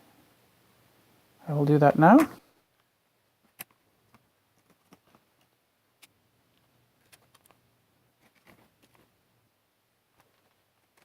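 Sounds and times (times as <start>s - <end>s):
small parts clicking and tapping: 2.8s - 7.6s.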